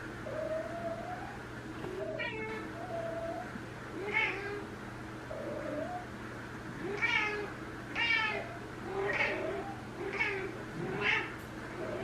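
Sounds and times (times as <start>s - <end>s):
cat meowing: 4.0s - 4.6s, 6.8s - 11.4s.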